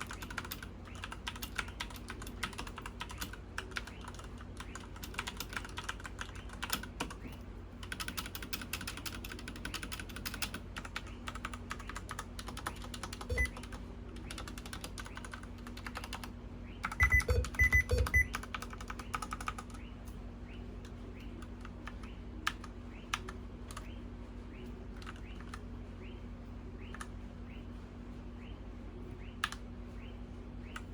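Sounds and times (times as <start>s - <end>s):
mechanical keyboard typing: 0.0s - 7.2s, 7.8s - 19.8s.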